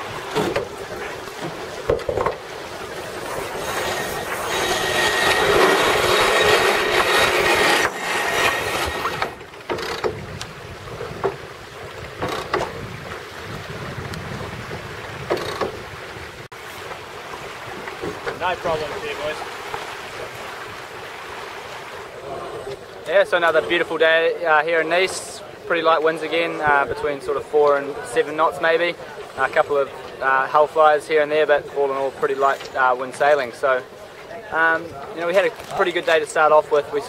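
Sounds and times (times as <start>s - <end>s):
rushing water: 0.0s - 37.0s
knocks on sailboat: 1.4s - 2.4s, 5.2s - 16.0s
wind noise: 3.2s - 16.5s.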